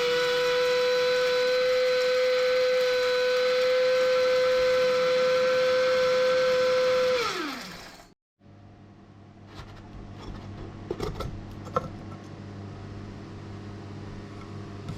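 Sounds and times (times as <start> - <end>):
small electric motor whining: 0.0 - 8.1.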